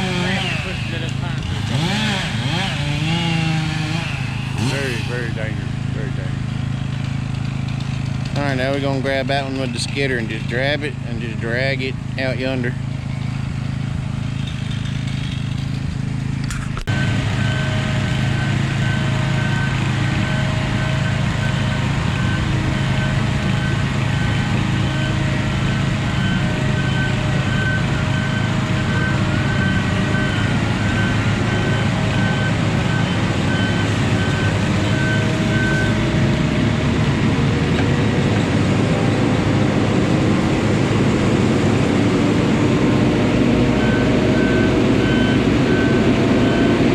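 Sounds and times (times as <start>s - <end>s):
high pulsing whine: 0.0s - 7.1s
diesel engine of heavy machinery: 0.0s - 46.9s.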